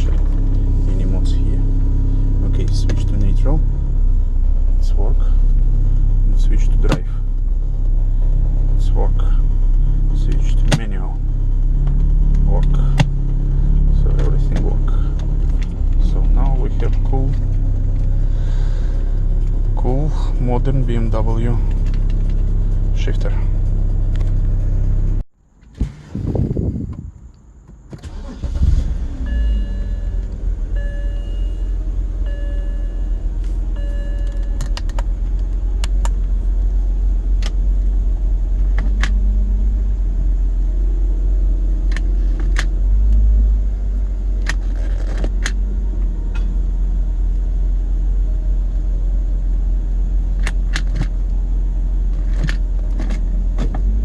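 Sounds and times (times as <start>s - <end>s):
car engine starting and idling: 0.0s - 54.0s
dashboard warning chime: 29.2s - 34.6s.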